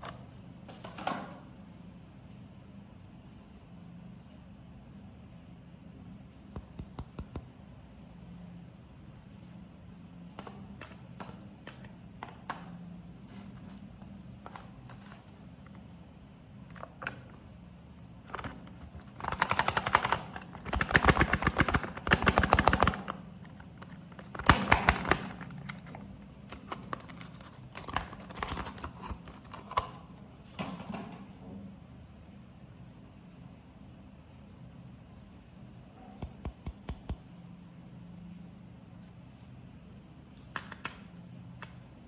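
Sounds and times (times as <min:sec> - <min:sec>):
packaging clicks and rustles: 0:18.3 - 0:30.0.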